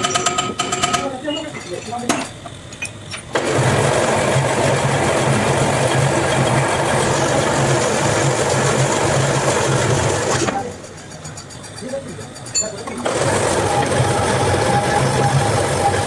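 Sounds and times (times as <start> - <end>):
powered machine running loudly: 3.3 - 12.3, 13.0 - 16.0.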